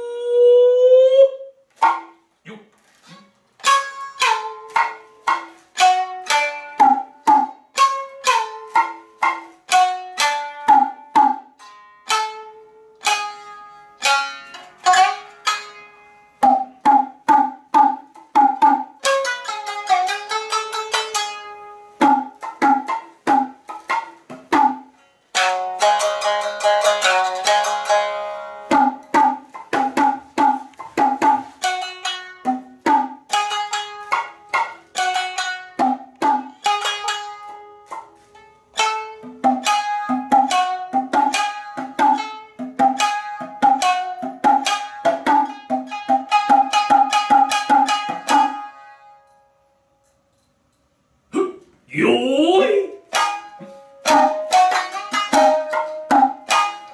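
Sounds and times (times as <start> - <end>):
shamisen plucked notes: 3.1 - 49.9, 51.4 - 56.9
hand drum strikes: 6.7 - 9.8, 10.6 - 11.5, 16.4 - 19.0, 22.0 - 24.9, 28.7 - 31.6, 35.8 - 36.5, 39.2 - 48.6.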